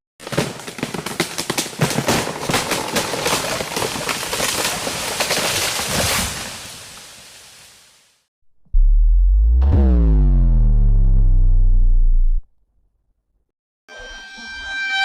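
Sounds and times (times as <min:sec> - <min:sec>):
dense crackle of sharp pops: 0:00.2 - 0:05.9.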